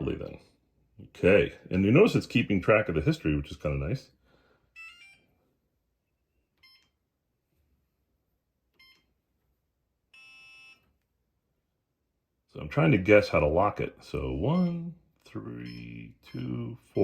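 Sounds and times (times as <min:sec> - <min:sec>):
smart lock electronic beeps: 0:04.8 - 0:05.3, 0:06.3 - 0:07.0, 0:08.8 - 0:09.2, 0:10.1 - 0:11.0, 0:14.5 - 0:17.0.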